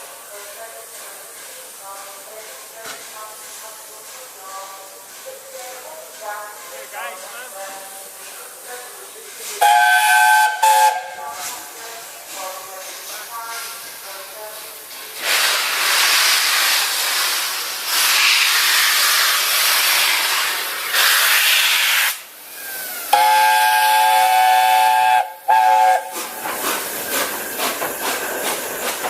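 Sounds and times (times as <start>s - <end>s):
steam locomotive hissing: 0.0s - 29.0s
steam whistle blasts: 9.6s - 11.2s, 23.1s - 26.2s.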